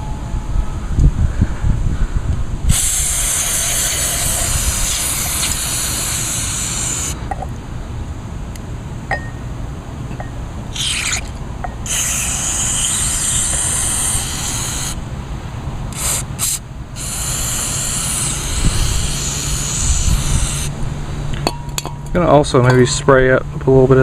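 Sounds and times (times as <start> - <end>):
low rumble: 0.0 - 2.7
aerosol spray hissing: 2.7 - 7.2, 11.9 - 15.0, 16.0 - 20.7.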